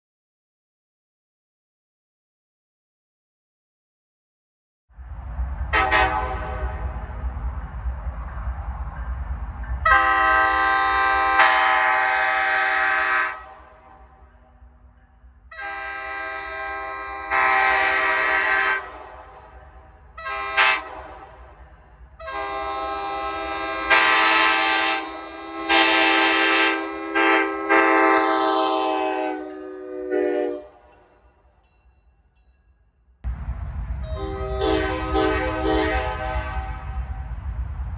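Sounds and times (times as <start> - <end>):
locomotive air horn blasts: 5.7 - 7.1, 9.8 - 14.2, 15.5 - 19.5, 20.2 - 21.4, 22.2 - 31.2, 34.0 - 37.0.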